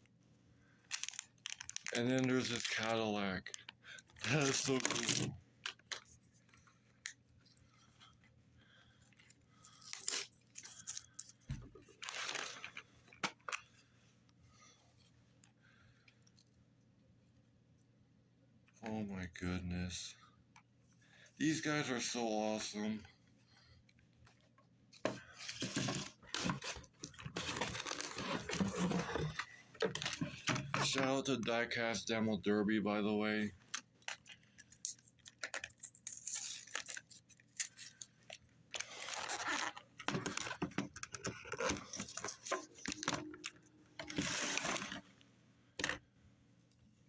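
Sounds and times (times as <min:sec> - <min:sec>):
packaging crinkling and tearing: 0:00.9 - 0:06.1, 0:09.6 - 0:13.7, 0:25.4 - 0:31.2, 0:33.7 - 0:45.0.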